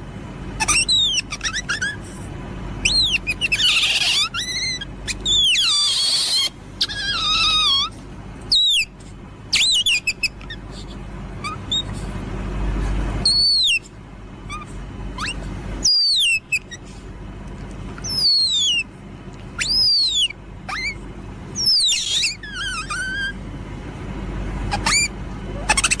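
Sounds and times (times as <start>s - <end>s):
low steady rumble: 0.0s - 26.0s
bird whistling downward calls: 0.6s - 2.0s, 2.8s - 7.9s, 8.5s - 8.9s, 9.5s - 10.6s, 11.4s - 11.9s, 13.2s - 13.9s, 14.5s - 16.8s, 18.0s - 18.9s, 19.6s - 21.0s, 21.6s - 23.4s, 24.7s - 26.0s.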